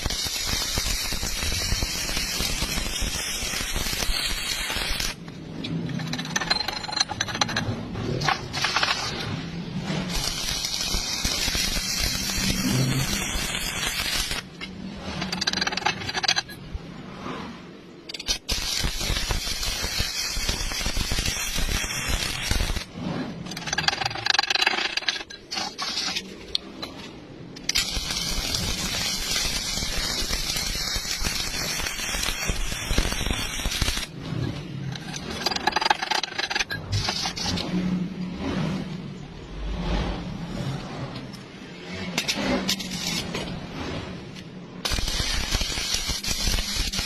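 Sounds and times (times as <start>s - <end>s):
welding arc crackling and hissing: 0.0s - 5.3s, 8.5s - 14.6s, 18.1s - 22.9s, 27.6s - 34.2s, 44.8s - 47.0s.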